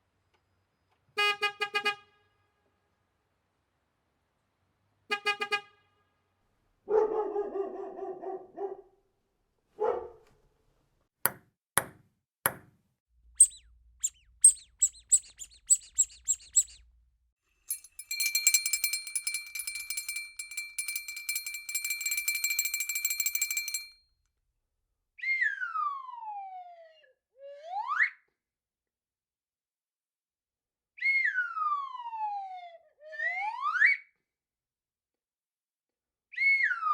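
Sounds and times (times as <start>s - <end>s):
sliding whistle-like tone: 13.4s - 16.9s
quick high chirps: 13.4s - 17.0s, 17.7s - 23.9s
steady pulsing ring: 13.5s - 16.8s, 17.7s - 24.0s.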